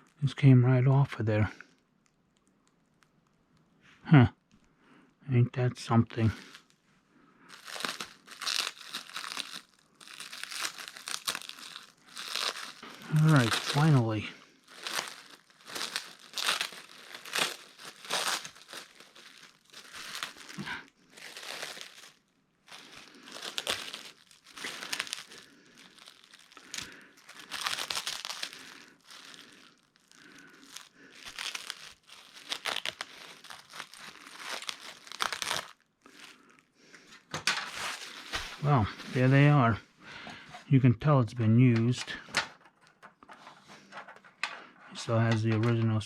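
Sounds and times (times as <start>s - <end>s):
plastic crinkling and rustling: 6.2s - 39.5s, 41.7s - 46.0s
plastic tearing: 7.5s - 39.3s.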